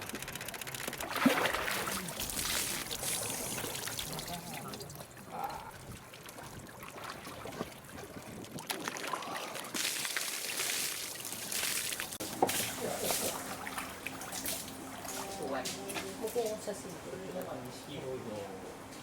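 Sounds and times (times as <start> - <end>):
water splashing and pouring: 1.0 - 14.8.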